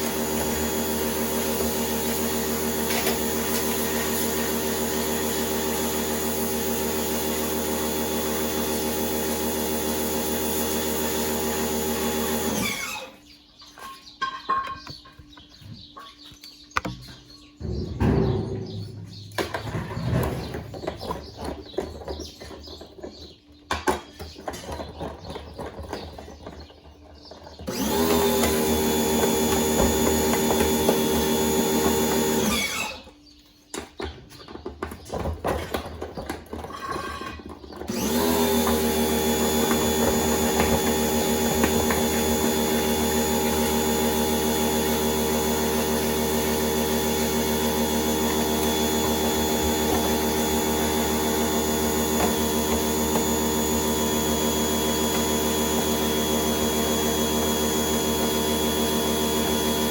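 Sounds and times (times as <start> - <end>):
electric motor whining: 0.0 - 13.2, 27.7 - 33.1, 37.9 - 59.9.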